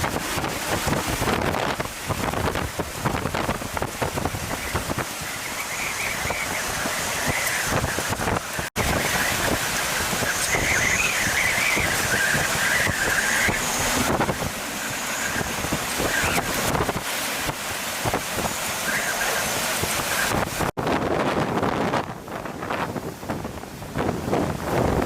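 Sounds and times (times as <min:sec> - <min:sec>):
wind and rain buffeting microphone: 0:00.0 - 0:25.0
wavering high whistle: 0:10.2 - 0:14.2.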